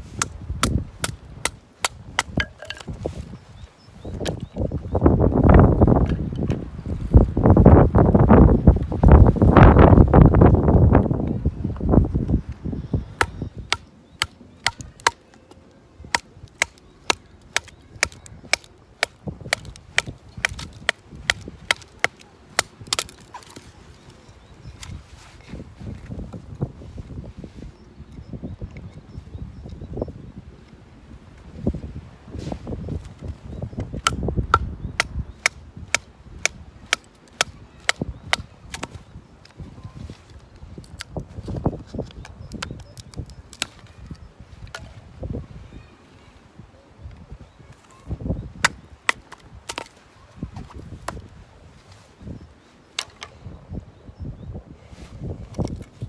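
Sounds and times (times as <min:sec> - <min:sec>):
wooden baton striking knife: 0:13.2 - 0:15.2, 0:16.1 - 0:23.6.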